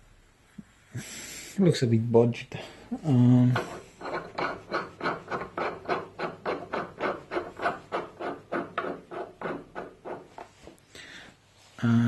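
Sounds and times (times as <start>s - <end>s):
rhythmic scraping strokes: 3.1s - 10.8s.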